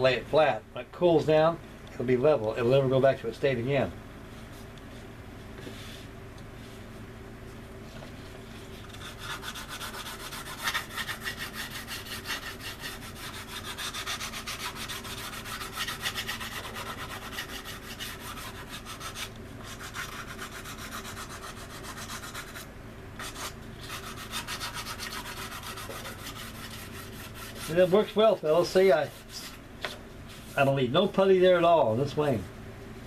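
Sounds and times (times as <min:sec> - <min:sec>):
hand sanding strokes: 0:08.6 - 0:29.6.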